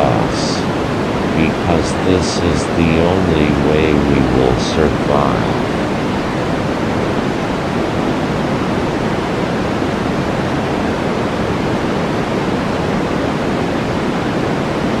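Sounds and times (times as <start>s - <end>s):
loud steady rushing noise: 0.0s - 7.1s.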